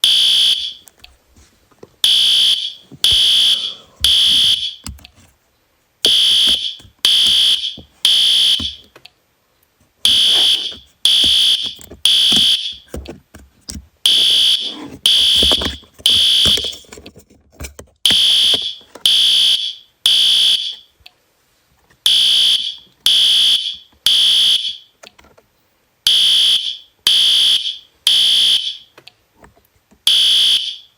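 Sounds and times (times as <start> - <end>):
alarm sounder high beeps: 0.0 - 0.8, 2.0 - 4.8, 6.0 - 8.8, 10.0 - 12.8, 14.1 - 16.7, 18.1 - 20.8, 22.1 - 24.8, 30.1 - 30.9.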